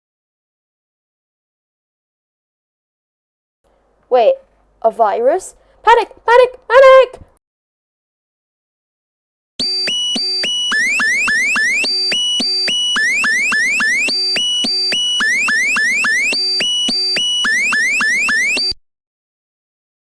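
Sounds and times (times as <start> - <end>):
synthesized electronic loop: 9.6 - 18.8.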